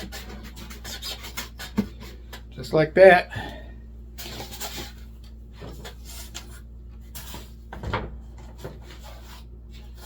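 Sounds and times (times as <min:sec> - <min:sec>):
foam board rubbing and scraping: 0:00.0 - 0:02.0, 0:08.5 - 0:10.0.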